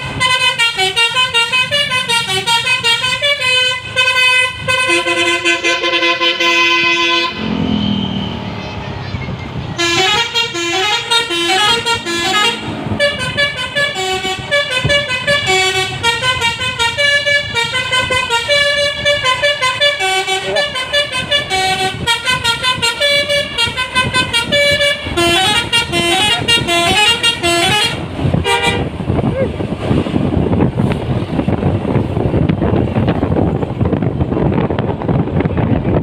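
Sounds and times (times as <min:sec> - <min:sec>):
multi-tone bus horn tune: 0:00.0 - 0:08.4, 0:09.7 - 0:29.3
bus engine rumbling: 0:00.0 - 0:36.0.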